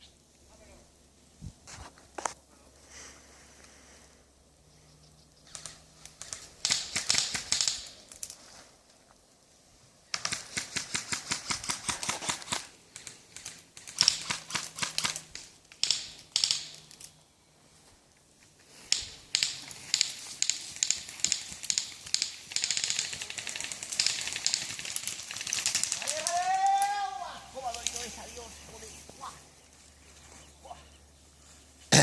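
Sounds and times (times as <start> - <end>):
airsoft guns firing full-auto: 5.5 - 8.0, 10.1 - 16.8, 18.9 - 26.1.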